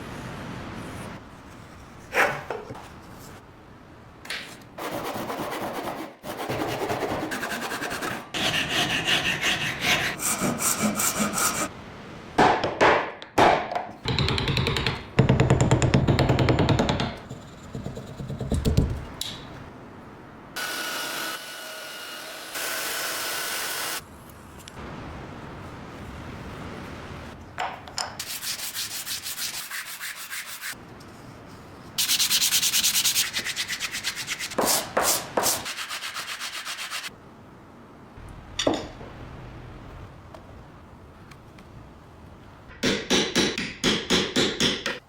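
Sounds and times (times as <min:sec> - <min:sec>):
sanding rust off metal: 0:06.6 - 0:11.7, 0:28.2 - 0:30.8, 0:32.0 - 0:37.1.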